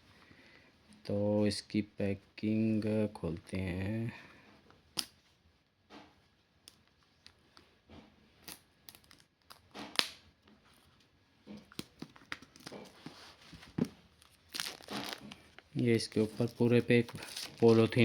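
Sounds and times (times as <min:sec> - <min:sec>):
packaging rustling and snapping: 0:11.5 - 0:18.0.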